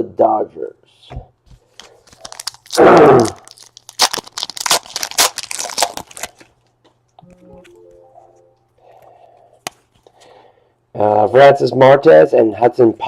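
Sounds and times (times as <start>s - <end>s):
foil wrapper tearing and crinkling: 1.8s - 6.7s.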